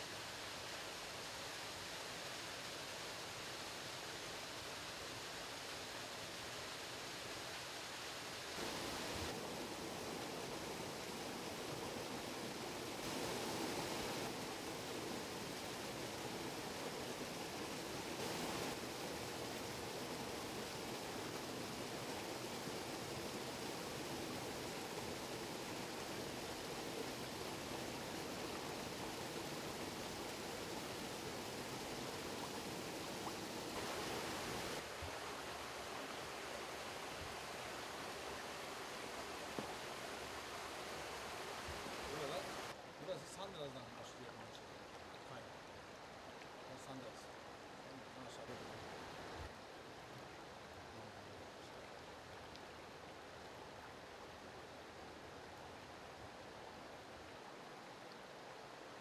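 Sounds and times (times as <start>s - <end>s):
stream water rushing: 0.0s - 59.0s.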